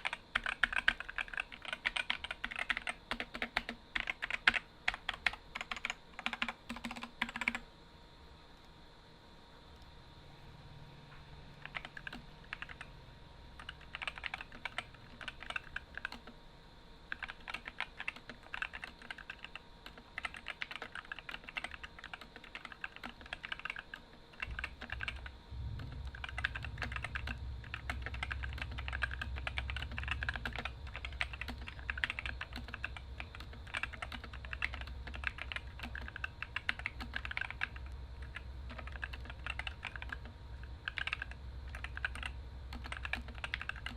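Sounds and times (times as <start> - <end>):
mechanical keyboard typing: 0.0 - 7.6, 11.6 - 12.9, 13.6 - 16.4, 17.1 - 43.9.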